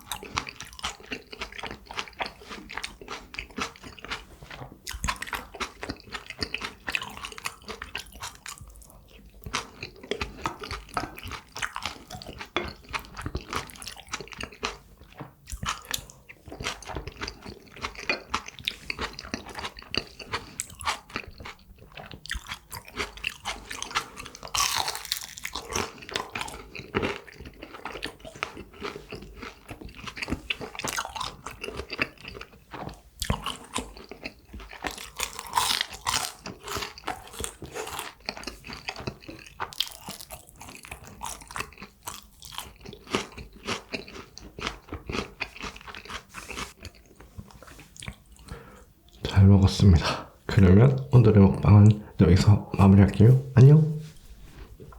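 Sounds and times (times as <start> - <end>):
chewing: 0.0 - 49.3
crunchy bites: 22.3 - 27.8.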